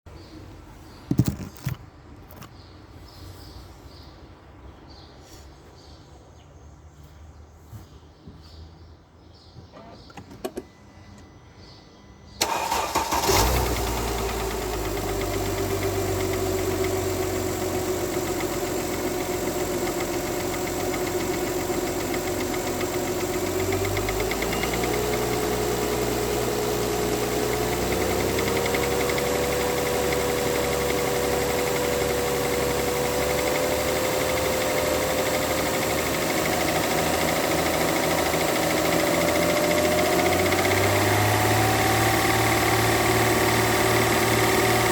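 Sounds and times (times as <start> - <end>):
car engine cranking and idling: 12.4 - 44.9
engine whine: 12.4 - 44.9.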